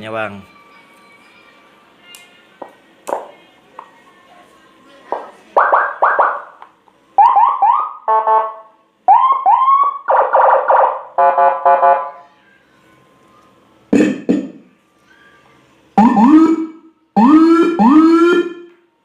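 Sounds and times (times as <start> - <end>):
electronic siren effect tones: 5.6 - 6.6, 7.2 - 12.2, 16.0 - 18.7.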